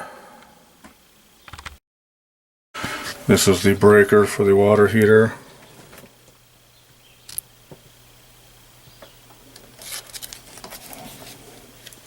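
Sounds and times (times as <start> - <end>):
faint steady hum: 2.8 - 12.0
rustling: 9.6 - 12.0.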